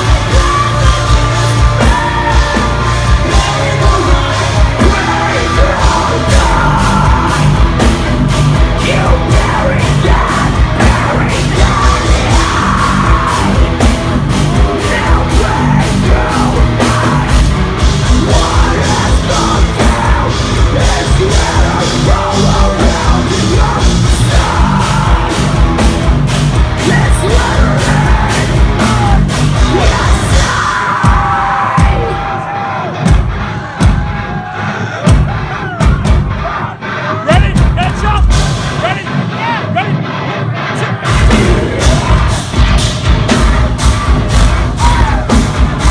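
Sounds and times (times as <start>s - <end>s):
distorted guitars and bass: 0.0s - 45.9s
rapid pounding drums: 0.0s - 45.9s
screamed vocals: 1.8s - 7.7s, 8.8s - 13.8s, 26.8s - 38.2s, 44.6s - 45.9s.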